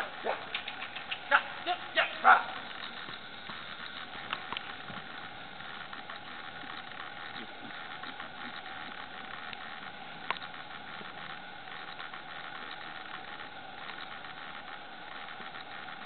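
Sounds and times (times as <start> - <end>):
snowstorm wind hiss: 0.0 - 16.0
faint clicks: 0.4 - 1.5, 5.8 - 16.0.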